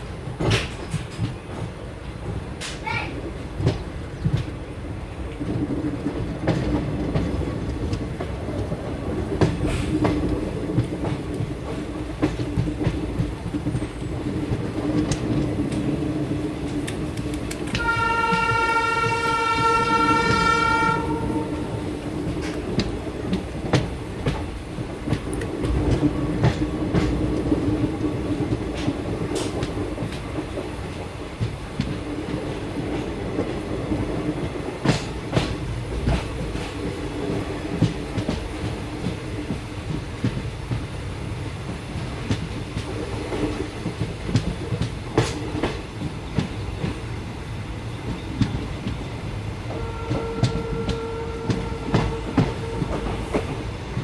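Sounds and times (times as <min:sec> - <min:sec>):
train rumbling on track: 0:00.0 - 0:54.0
train horn blast: 0:17.7 - 0:21.8, 0:49.7 - 0:53.4.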